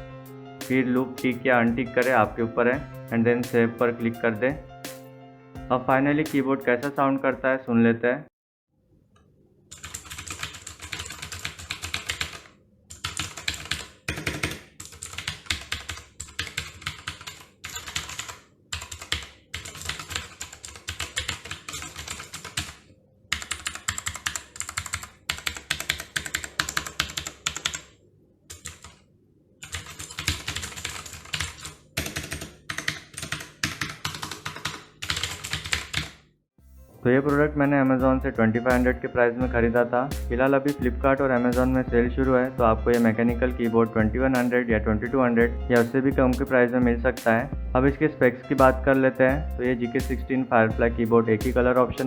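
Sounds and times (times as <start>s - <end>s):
clicky mechanical keyboard typing: 9.7s - 29.0s, 29.6s - 36.2s.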